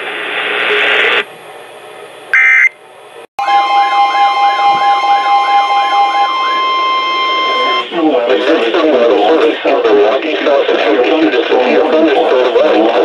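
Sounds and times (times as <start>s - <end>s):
screeching data burst: 2.3s - 2.8s
warbling siren: 2.3s - 2.8s, 3.4s - 8.6s
steady alert tone: 3.4s - 8.7s.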